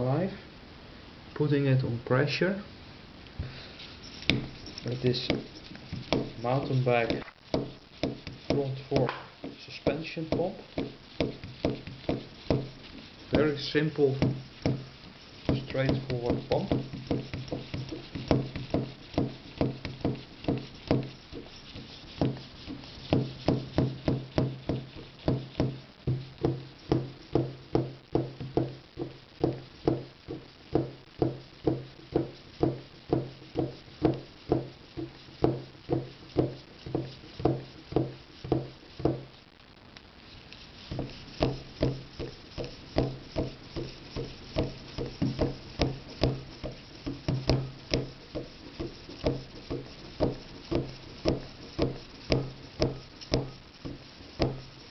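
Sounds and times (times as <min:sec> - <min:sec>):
hand pump strokes with clicks: 0:03.8 - 0:25.8, 0:40.8 - 0:54.9.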